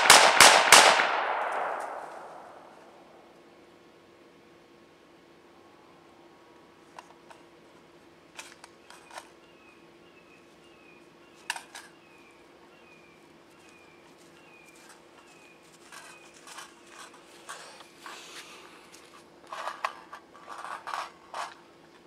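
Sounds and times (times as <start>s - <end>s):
rifle metallic clicks: 0.1s - 2.5s.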